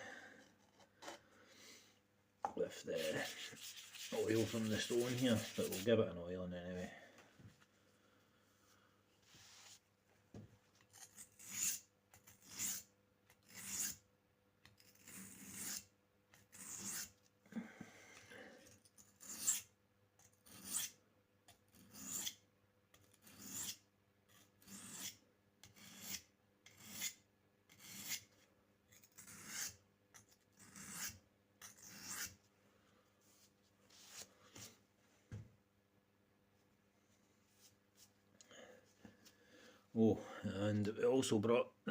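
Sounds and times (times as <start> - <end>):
knife scraping on sharpening stone: 3.0 - 5.9, 10.9 - 12.9, 13.5 - 14.0, 14.8 - 15.9, 16.5 - 17.1, 21.7 - 22.4, 23.2 - 28.3, 28.9 - 32.4.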